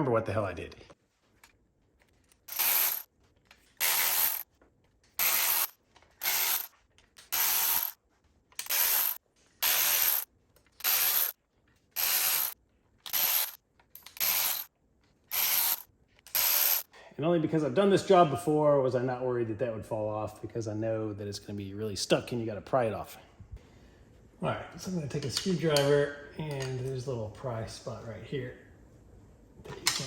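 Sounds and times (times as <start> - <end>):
ratchet wrench clicking: 2.5 - 3.1, 3.8 - 4.4, 5.2 - 6.7, 7.3 - 8.0, 8.6 - 11.3, 12.0 - 14.7, 15.3 - 16.9.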